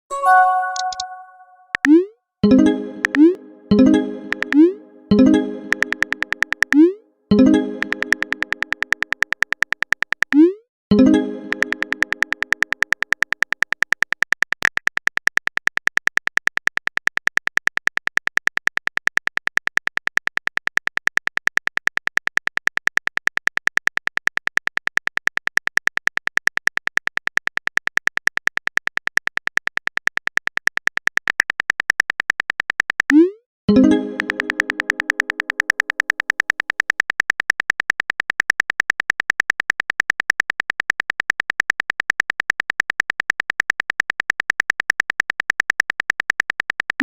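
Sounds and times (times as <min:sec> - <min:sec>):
low chime: 0:00.1 - 0:01.7.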